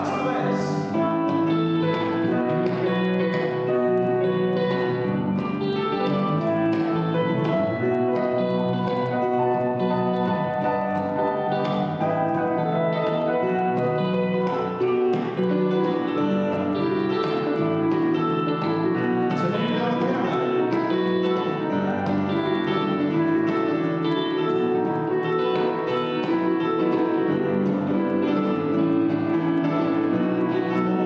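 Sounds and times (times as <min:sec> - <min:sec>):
guitar: 0:00.0 - 0:31.0
live band playing: 0:00.0 - 0:31.0
piano: 0:00.0 - 0:31.0.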